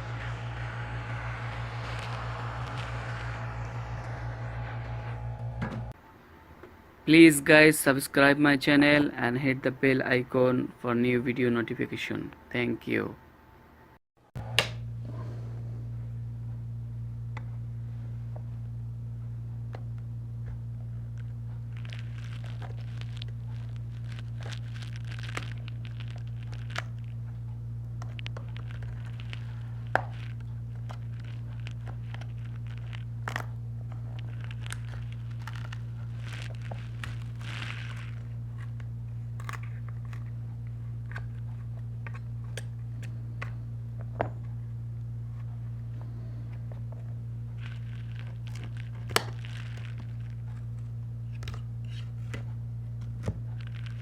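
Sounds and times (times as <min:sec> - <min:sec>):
adhesive crackling and tearing: 0:00.0 - 0:05.9, 0:20.6 - 0:43.6, 0:46.8 - 0:54.0
steady low hum: 0:00.0 - 0:07.2, 0:13.2 - 0:54.0.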